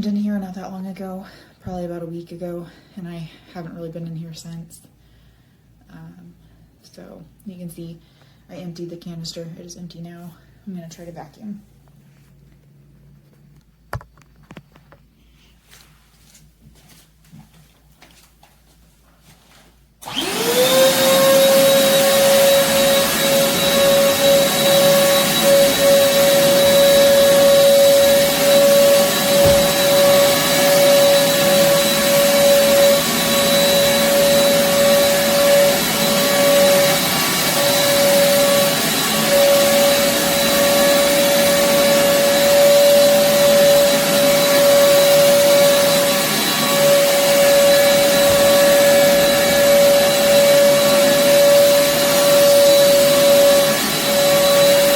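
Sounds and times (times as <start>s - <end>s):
vacuum cleaner running over carpet: 20.0s - 54.9s.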